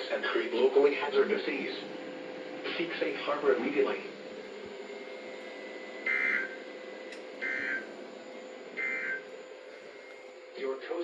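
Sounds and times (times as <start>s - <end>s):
screechy digital data tones: 6.0s - 6.6s, 7.4s - 7.9s, 8.7s - 9.3s.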